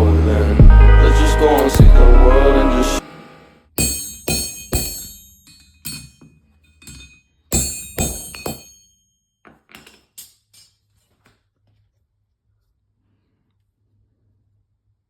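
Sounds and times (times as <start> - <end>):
hammer striking steel on anvil: 3.8 - 9.0.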